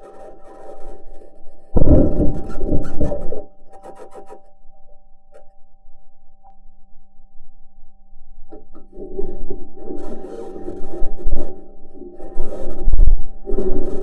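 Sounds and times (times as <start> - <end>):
steady high whine: 1.7 - 3.7.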